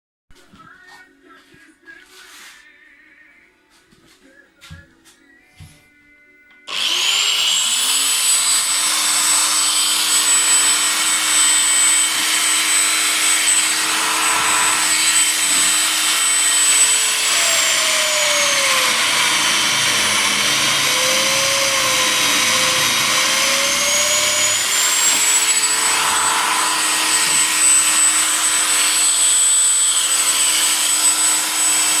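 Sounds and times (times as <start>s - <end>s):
drill press motor whining: 6.7s - 32.0s.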